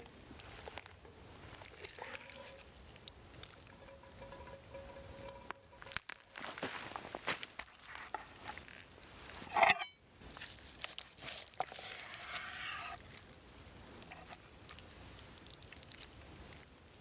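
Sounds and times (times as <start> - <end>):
food and drink handling sounds: 0.0 - 17.0
loud ringing clink: 9.6 - 10.2.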